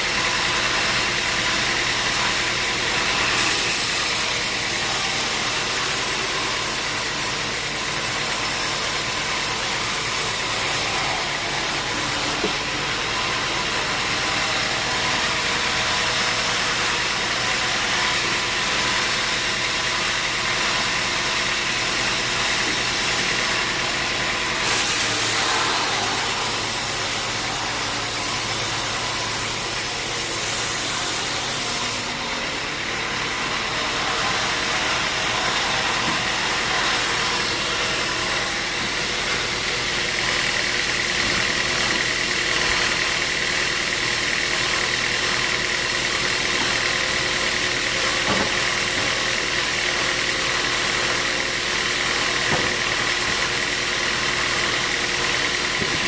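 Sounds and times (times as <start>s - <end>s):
sawmill machinery drone: 0.0s - 56.0s
high hiss: 24.7s - 31.5s.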